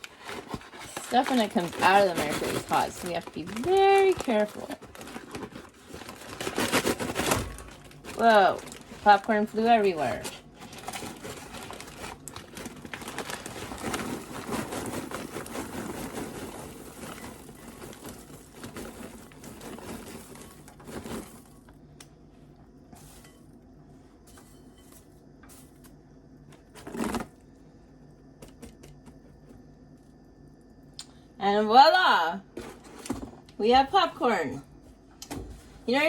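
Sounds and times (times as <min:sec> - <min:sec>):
paper popcorn bag crinkling: 0:00.0 - 0:21.8, 0:26.6 - 0:27.4
popcorn shifting inside bag: 0:00.0 - 0:21.9, 0:26.5 - 0:27.4, 0:32.5 - 0:33.5.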